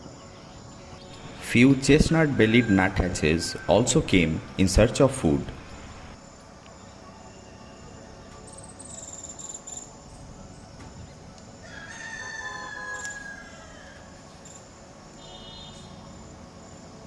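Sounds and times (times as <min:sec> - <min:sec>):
insects: 0:00.0 - 0:17.0
rooster crowing: 0:01.2 - 0:06.2, 0:11.6 - 0:14.1.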